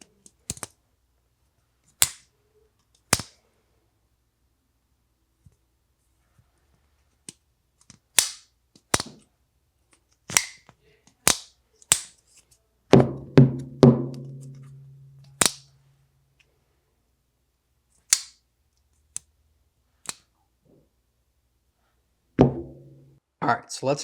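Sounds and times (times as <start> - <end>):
heavy knocks: 22.4 - 23.2.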